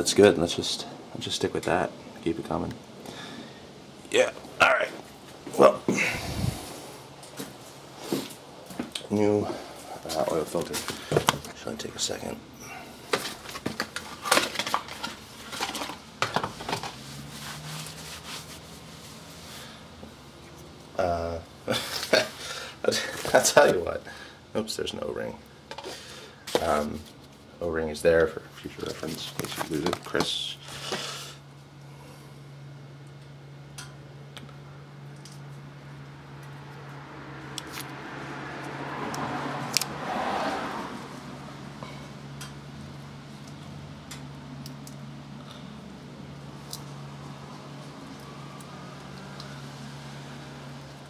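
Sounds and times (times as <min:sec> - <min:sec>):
steady low hum: 0:00.0 - 0:38.8, 0:41.0 - 0:51.0
handling rustles and knocks: 0:13.0 - 0:19.4, 0:28.2 - 0:31.0.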